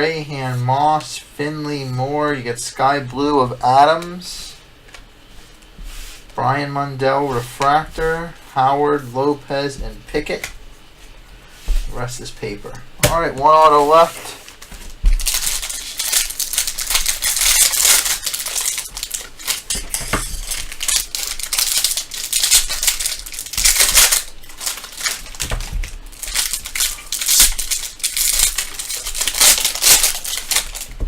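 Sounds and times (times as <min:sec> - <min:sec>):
plastic wrappers crinkling: 0:13.2 - 0:31.0.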